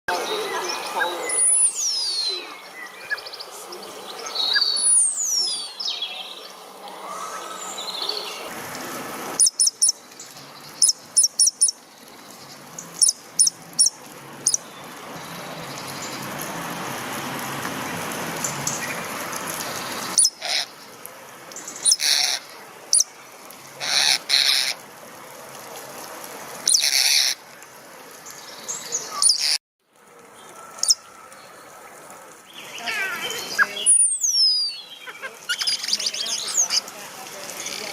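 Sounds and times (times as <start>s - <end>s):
starling calling: 0.1s - 8.5s, 9.4s - 16.3s, 18.4s - 23.2s, 23.8s - 24.9s, 26.6s - 27.6s, 28.2s - 29.6s, 30.4s - 31.8s, 32.5s - 37.9s.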